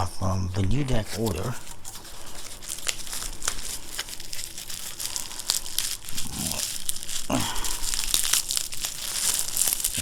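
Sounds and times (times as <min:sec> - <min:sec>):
packaging crinkling and tearing: 0:00.8 - 0:10.0.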